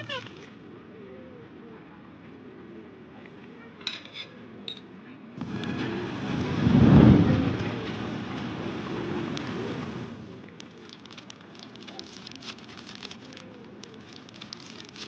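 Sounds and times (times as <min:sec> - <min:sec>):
thunder rumble: 0:05.4 - 0:10.5
rain: 0:05.4 - 0:13.1
fireplace crackling: 0:05.4 - 0:15.0.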